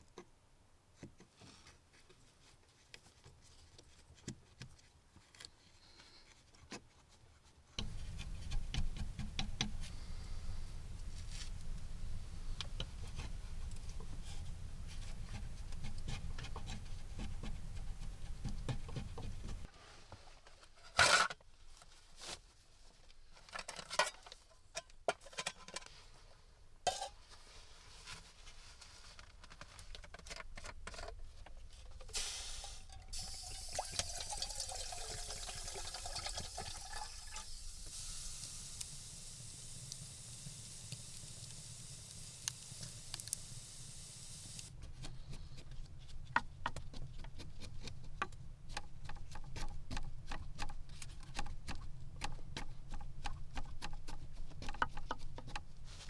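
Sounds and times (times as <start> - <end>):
steady hiss: 7.8 - 19.7, 32.2 - 44.7
liquid pouring: 32.2 - 44.7.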